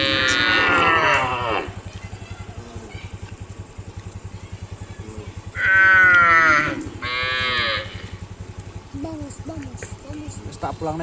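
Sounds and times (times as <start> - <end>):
cow mooing: 0.0 - 1.8, 5.5 - 8.2.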